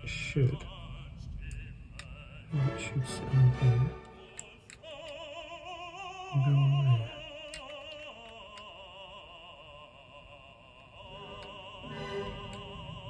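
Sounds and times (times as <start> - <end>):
operatic singing music: 0.0 - 13.0
plastic toy bricks clicking: 7.3 - 8.9.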